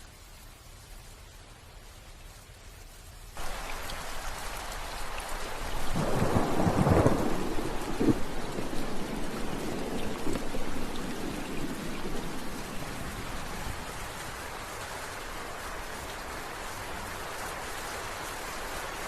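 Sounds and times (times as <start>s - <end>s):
steady rain falling: 0.0s - 19.0s
thunder rumble: 5.5s - 14.3s.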